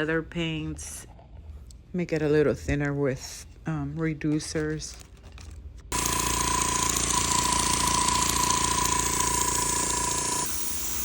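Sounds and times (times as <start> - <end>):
small electric motor whining: 5.9 - 11.0.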